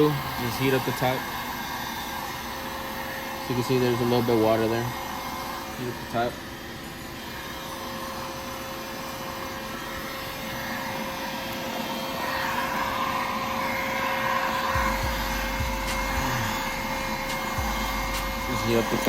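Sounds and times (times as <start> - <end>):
heat gun blowing: 0.0 - 19.0
low rumble: 14.8 - 19.0.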